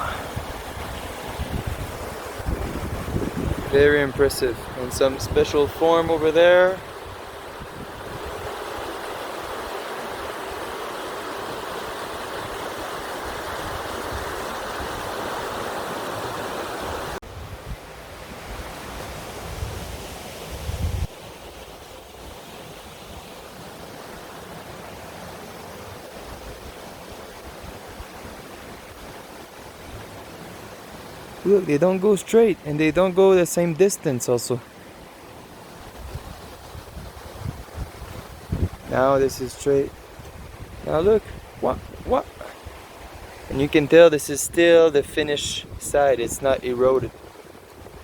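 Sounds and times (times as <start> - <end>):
wind rumble on microphone: 0.0 - 5.7, 16.9 - 21.2, 35.9 - 39.2, 39.8 - 43.6.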